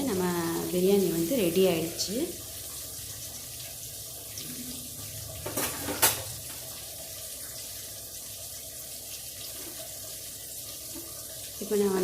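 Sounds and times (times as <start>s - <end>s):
steady kitchen hiss: 0.0s - 12.0s
utensils knocking: 5.4s - 6.3s.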